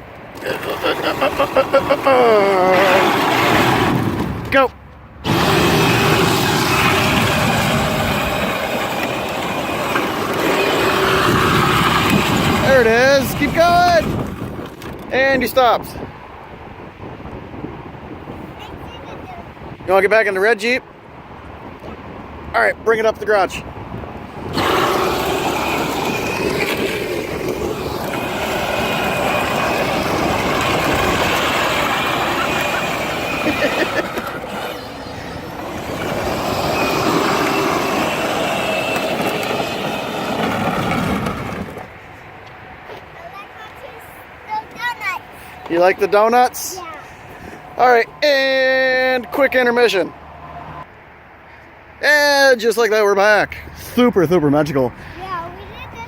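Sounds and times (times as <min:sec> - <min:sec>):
electric toy car motor whine: 0:00.4 - 0:04.5, 0:05.2 - 0:14.8, 0:24.3 - 0:42.0
plastic wheels spinning and sliding: 0:00.4 - 0:04.6, 0:05.3 - 0:15.0, 0:24.4 - 0:42.0.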